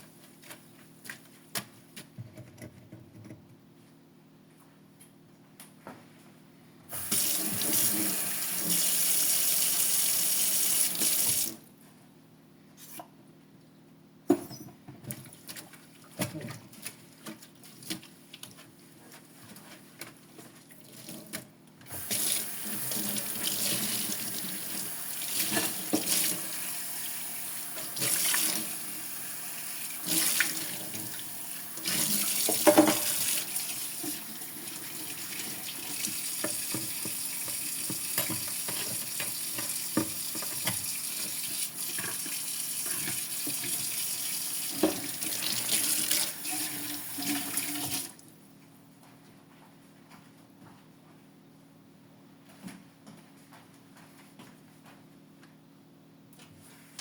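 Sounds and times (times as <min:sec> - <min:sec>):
water running into sink: 0:07.0 - 0:11.5, 0:21.9 - 0:48.2.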